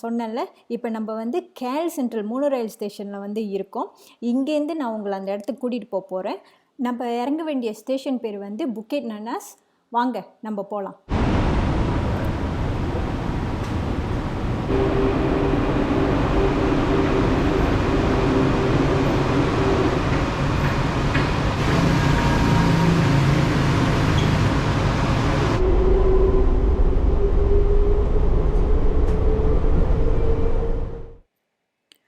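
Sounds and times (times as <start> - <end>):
monorail train rumble and whine: 11.1 - 31.2.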